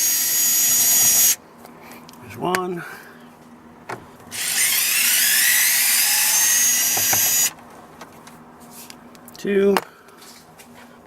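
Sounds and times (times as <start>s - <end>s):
power drill whine: 0.0s - 1.4s, 4.3s - 7.6s.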